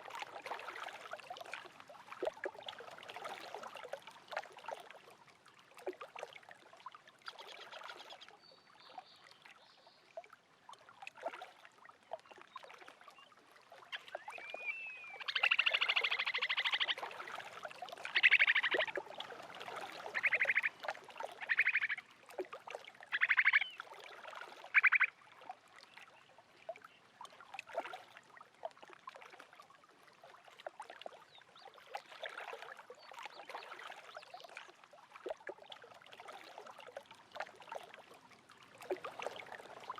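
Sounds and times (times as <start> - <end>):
lake waves lapping: 0.0 - 9.5, 10.1 - 39.9
animal trilled calls: 18.1 - 18.9, 20.1 - 20.7, 21.4 - 22.0, 23.1 - 23.7, 24.7 - 25.1.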